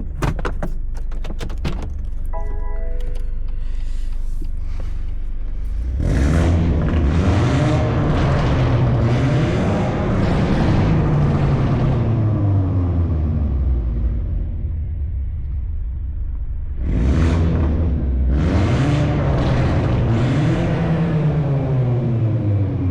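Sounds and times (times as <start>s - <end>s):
car engine accelerating hard: 4.8s - 22.9s.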